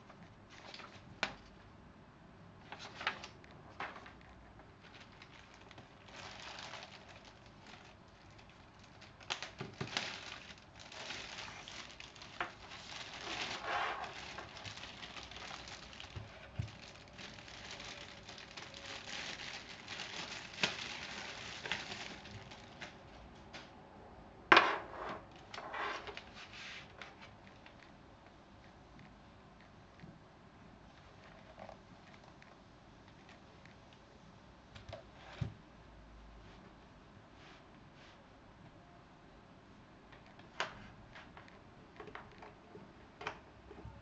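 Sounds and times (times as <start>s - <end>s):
packaging rustling and crinkling: 0.5s - 1.5s, 2.7s - 23.1s.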